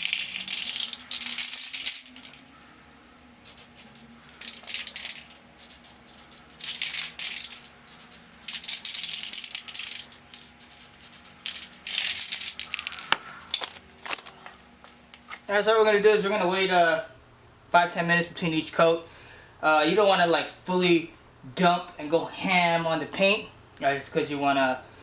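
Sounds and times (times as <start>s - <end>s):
spray paint hissing: 0.0s - 2.3s, 3.4s - 12.6s
aerosol can mixing ball rattling: 0.0s - 2.4s, 3.5s - 13.2s.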